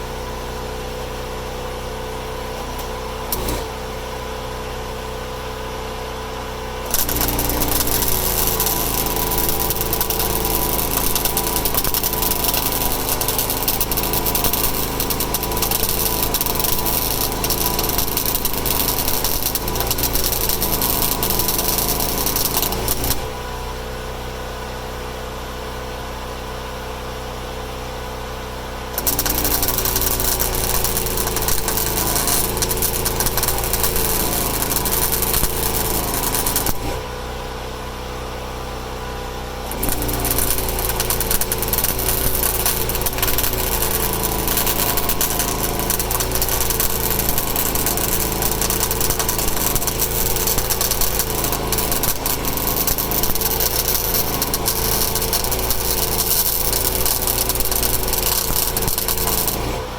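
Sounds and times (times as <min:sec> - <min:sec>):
crawler dozer engine running: 0:06.6 - 0:23.8, 0:28.7 - 0:59.9
loud rattling clatter: 0:06.9 - 0:23.2, 0:29.0 - 0:36.9, 0:39.8 - 0:59.6.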